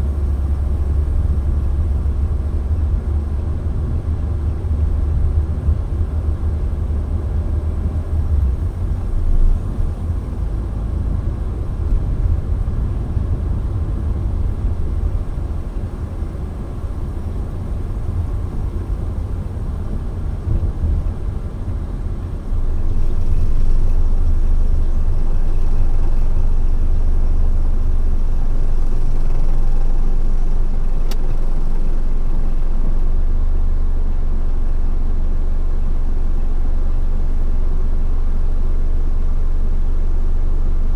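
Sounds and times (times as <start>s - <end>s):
car road and engine rumble: 0.0s - 40.9s
faint click: 31.0s - 31.4s.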